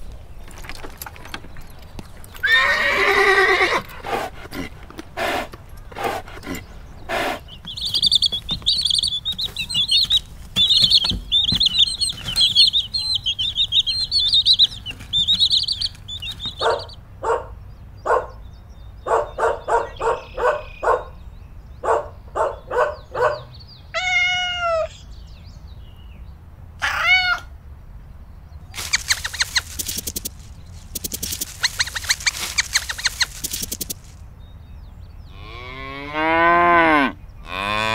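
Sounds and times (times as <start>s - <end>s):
short repeated animal calls: 5.2s - 10.8s
rapid high chirping: 6.0s - 17.0s, 28.8s - 34.2s
cat meowing: 24.0s - 24.9s.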